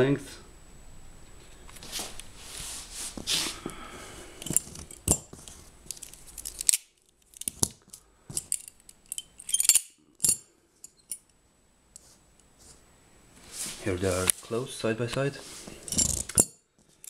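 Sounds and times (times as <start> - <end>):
butterfly knife rustling scrape: 1.8 - 3.6, 13.4 - 14.3.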